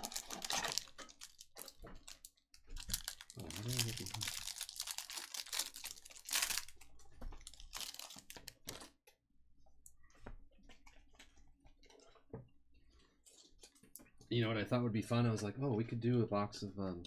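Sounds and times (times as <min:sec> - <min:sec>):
cards and foil wrappers crinkling: 0:00.0 - 0:09.0.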